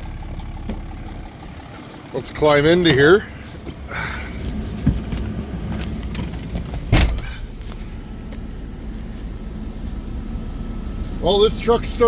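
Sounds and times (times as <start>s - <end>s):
diesel engine idling: 0.0s - 12.0s
sharp thump: 6.9s - 7.4s.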